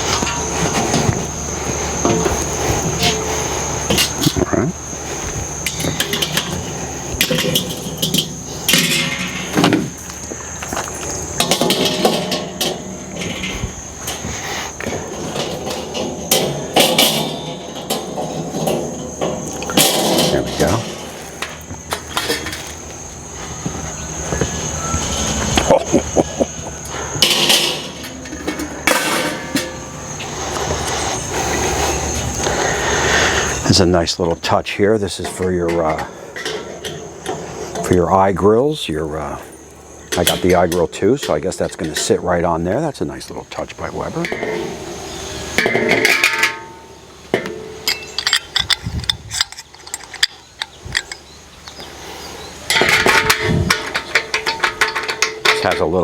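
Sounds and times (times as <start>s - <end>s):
metal grill parts clanking: 0.0s - 56.0s
small metal parts clinking: 24.3s - 31.3s, 45.6s - 51.9s, 52.6s - 56.0s.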